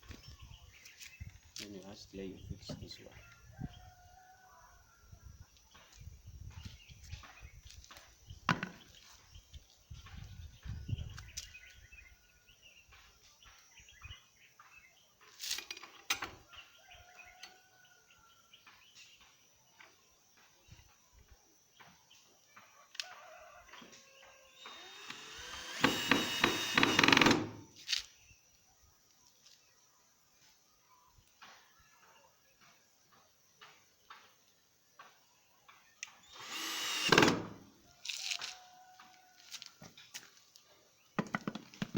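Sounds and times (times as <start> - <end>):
power tool burst: 24.6 - 27.6, 36.2 - 37.6.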